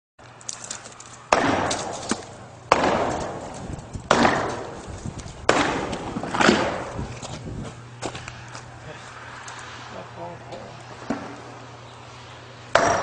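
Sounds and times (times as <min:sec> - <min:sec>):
sledgehammer striking metal wall: 0:01.3 - 0:04.8, 0:05.5 - 0:06.9, 0:12.7 - 0:13.0.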